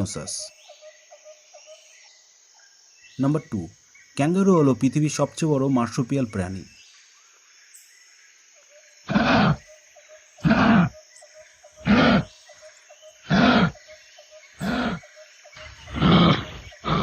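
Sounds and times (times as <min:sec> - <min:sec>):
kangaroo harsh calls: 0:09.0 - 0:09.7, 0:10.4 - 0:11.0, 0:11.8 - 0:12.4, 0:13.2 - 0:13.9, 0:14.6 - 0:17.0.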